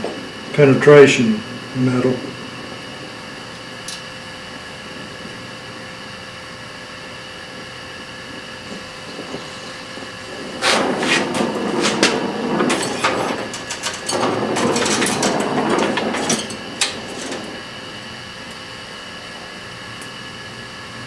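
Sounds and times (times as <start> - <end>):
welding crackling and hissing: 0.0 - 20.2.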